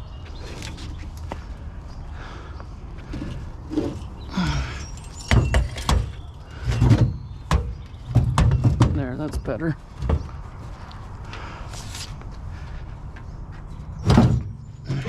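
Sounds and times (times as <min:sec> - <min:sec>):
objects scraping: 0:03.0 - 0:07.2
hard clunks and knocks: 0:05.3 - 0:10.4, 0:14.0 - 0:15.0.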